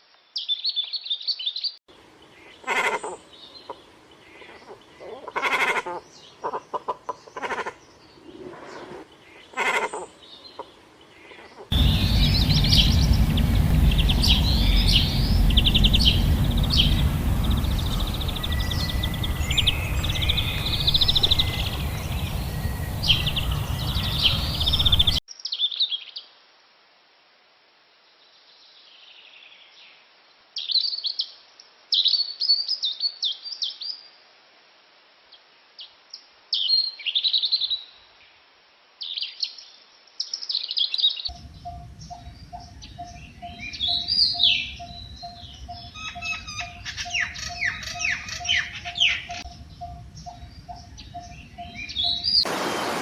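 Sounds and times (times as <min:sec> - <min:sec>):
background hiss: 0:01.9 - 0:25.6, 0:48.8 - 0:53.0
birds chirping: 0:02.0 - 0:25.2, 0:41.3 - 0:53.0.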